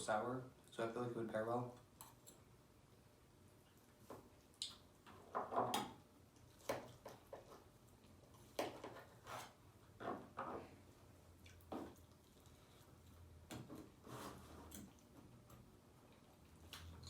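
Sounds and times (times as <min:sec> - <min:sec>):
wet chewing and smacking: 0:11.3 - 0:13.3.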